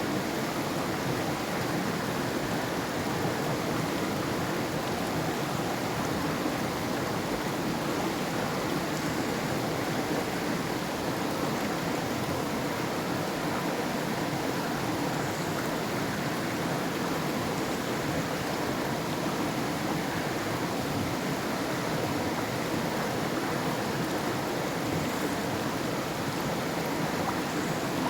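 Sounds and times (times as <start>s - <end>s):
river rushing over rocks: 0.0s - 28.0s.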